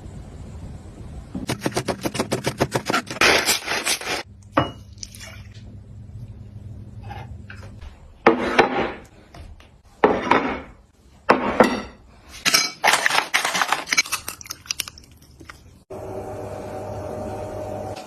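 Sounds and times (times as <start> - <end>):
kitchenware clinking: 3.4 - 5.1, 10.0 - 14.5.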